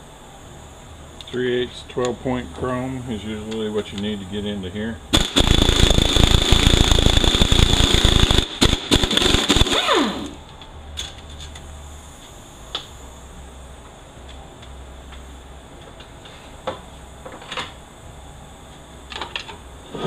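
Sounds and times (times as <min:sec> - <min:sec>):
air impact wrench hammering: 0:05.2 - 0:10.4.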